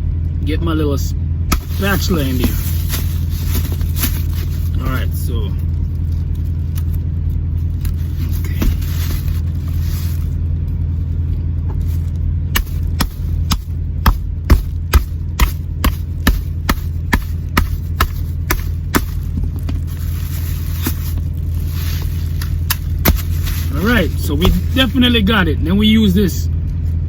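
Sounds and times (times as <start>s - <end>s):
truck low hum: 0.0s - 27.0s
hammer knocking on machete blade: 12.6s - 19.8s, 23.0s - 23.4s, 24.4s - 24.9s.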